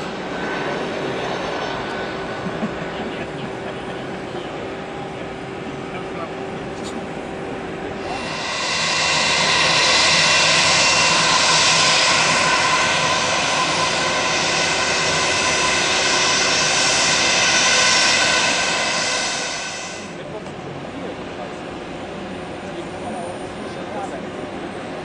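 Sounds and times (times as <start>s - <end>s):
jet engines passing close: 0.0s - 25.0s.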